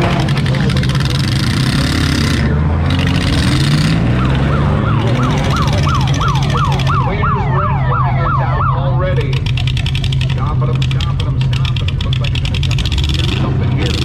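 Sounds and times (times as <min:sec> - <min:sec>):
car engine running: 0:00.0 - 0:14.0
siren whooping: 0:04.0 - 0:09.3.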